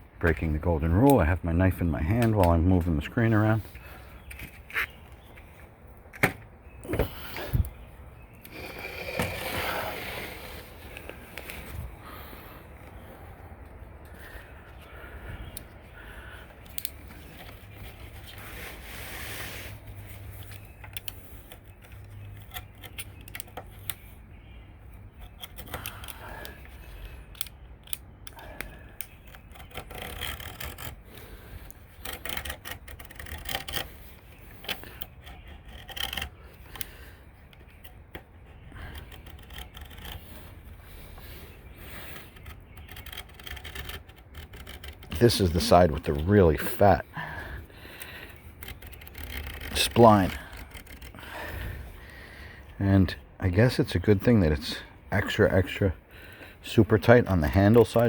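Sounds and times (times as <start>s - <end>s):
scraping and rubbing on screen: 17.4s - 20.4s.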